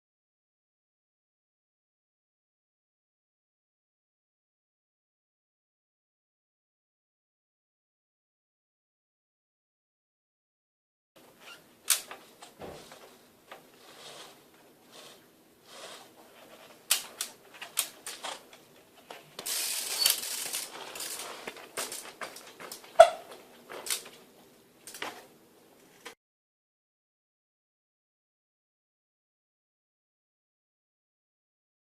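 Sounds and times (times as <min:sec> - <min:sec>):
scraping hiss: 0:13.8 - 0:16.8, 0:19.4 - 0:22.0.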